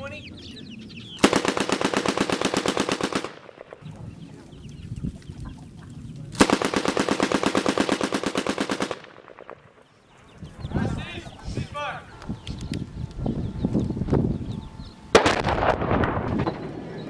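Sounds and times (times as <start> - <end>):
automatic machine-gun fire: 1.2 - 3.8, 6.4 - 9.8.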